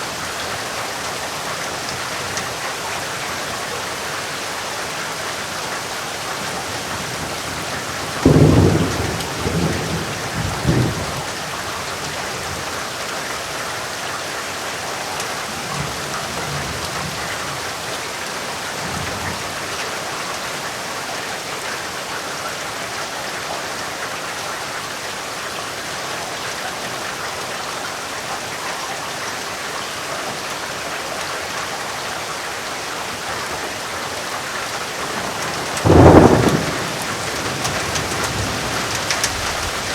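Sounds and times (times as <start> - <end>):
heavy rain: 0.0 - 39.9
distant thunder rumbles: 7.0 - 11.5, 35.0 - 39.9
thunder clap: 35.0 - 39.9.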